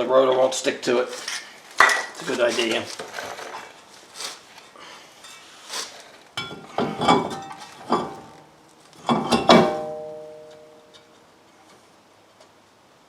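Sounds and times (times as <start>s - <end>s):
metal clanks ringing: 6.4s - 11.1s.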